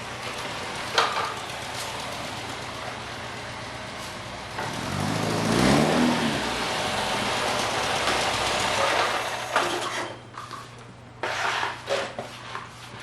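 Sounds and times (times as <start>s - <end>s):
car engine approaching: 0.0s - 8.8s.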